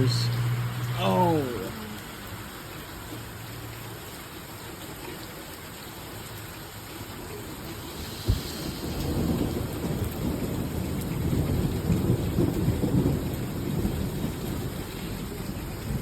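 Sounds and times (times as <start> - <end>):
rain hissing: 0.0 - 16.0
thunder rumbling: 8.3 - 16.0.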